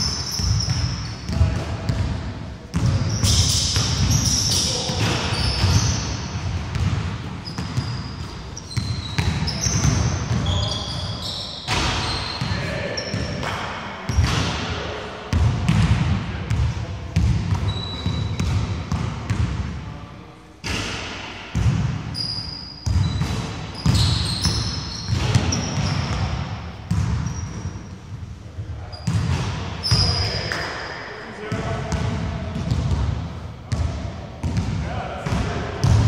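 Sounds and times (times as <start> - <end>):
sneakers squeaking on court: 0.0 - 2.1, 2.7 - 13.4, 14.1 - 14.6, 17.2 - 19.4, 21.6 - 28.1, 28.9 - 30.6.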